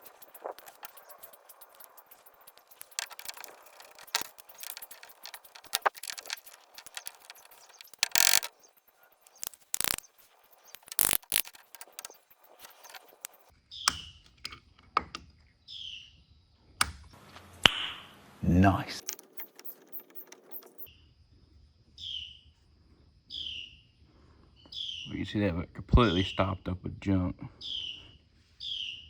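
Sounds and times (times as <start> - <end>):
metal parts and tools clinking: 0.0 - 13.5, 19.0 - 20.9
short squeaks: 0.0 - 13.5, 19.0 - 20.9.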